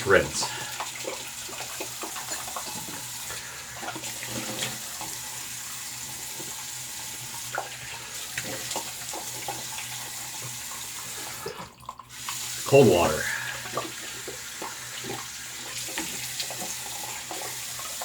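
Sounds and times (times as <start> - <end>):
faucet running: 0.0 - 18.0.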